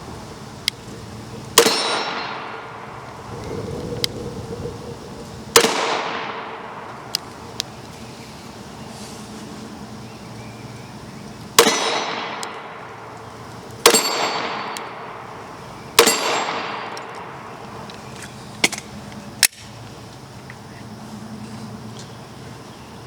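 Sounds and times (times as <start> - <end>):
pistol shots with echo: 1.6 - 2.9, 11.6 - 12.9, 13.8 - 15.2, 16.0 - 17.0.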